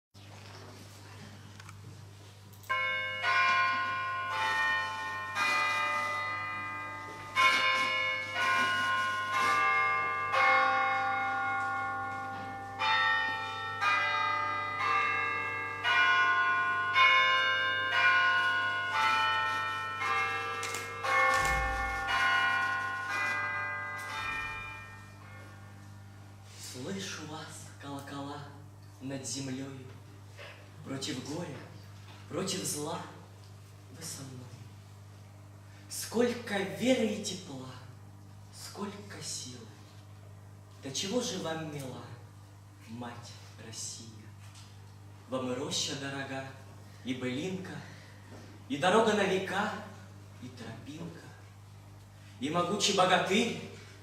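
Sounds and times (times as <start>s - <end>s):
church bells ringing: 2.6s - 27.6s.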